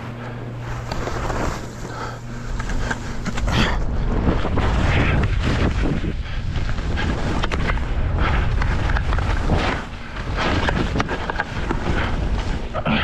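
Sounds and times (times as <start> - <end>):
skis swishing through snow: 0.0 - 12.8
wind buffeting microphone: 2.3 - 12.7.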